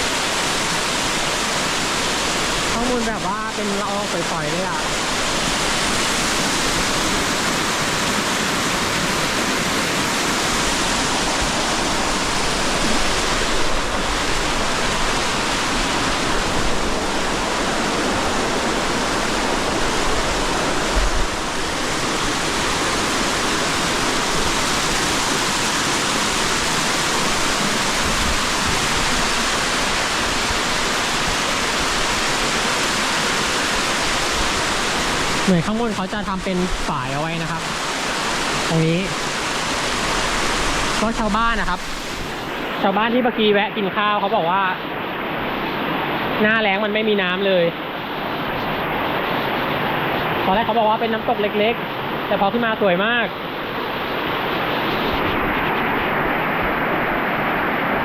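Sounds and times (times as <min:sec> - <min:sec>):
waterfall rushing onto rock: 0:00.0 - 0:43.6.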